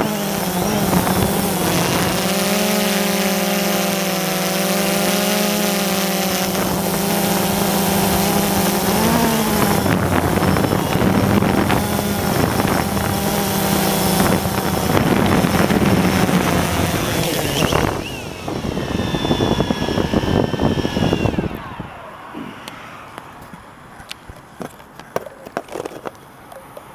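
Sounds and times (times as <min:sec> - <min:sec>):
high motor whine: 0:00.0 - 0:24.6
drone propellers whirring: 0:00.0 - 0:24.8
rushing noise: 0:14.8 - 0:24.0.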